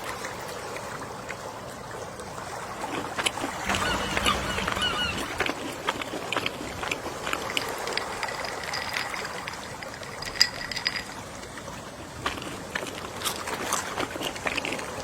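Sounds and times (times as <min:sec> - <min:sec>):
gentle sea waves washing: 0:00.0 - 0:15.0
small clicks and crackles: 0:05.4 - 0:15.0.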